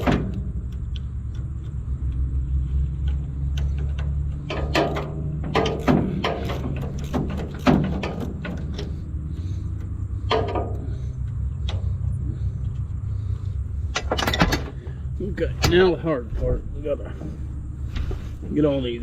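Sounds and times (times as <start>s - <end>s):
low mechanical hum: 0.0s - 19.0s
metallic clicks from hand tools: 0.3s - 2.3s.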